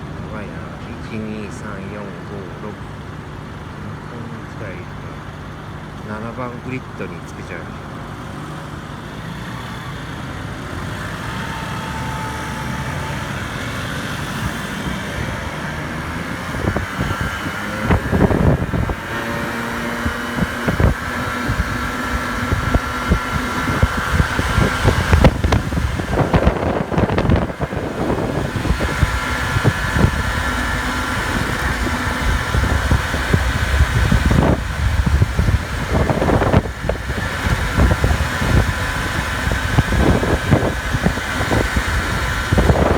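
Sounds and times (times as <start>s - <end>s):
scooter engines running: 0.0s - 42.9s
rushes of noise: 10.7s - 42.9s.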